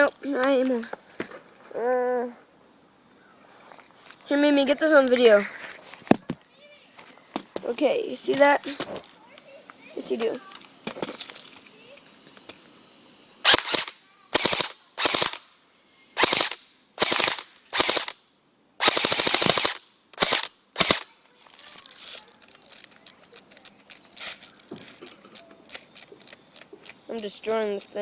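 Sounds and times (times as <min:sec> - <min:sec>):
airsoft rifle full-auto bursts: 0:13.4 - 0:15.4, 0:16.2 - 0:18.2, 0:18.8 - 0:21.1
faint clicking and rattling: 0:21.3 - 0:28.0.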